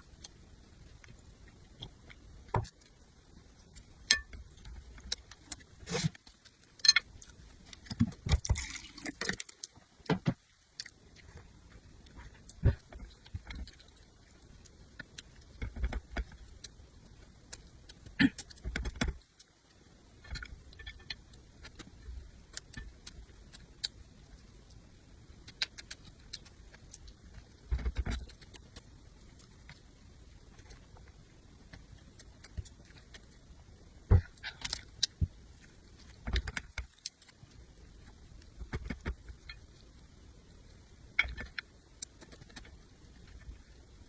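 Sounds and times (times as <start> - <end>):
chewing with crunches: 10.7 - 19.6, 20.2 - 40.1, 41.1 - 43.7.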